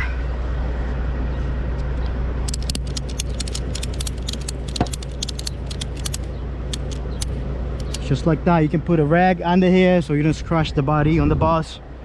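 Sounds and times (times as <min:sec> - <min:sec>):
metal hardware rattling: 0:02.5 - 0:08.1.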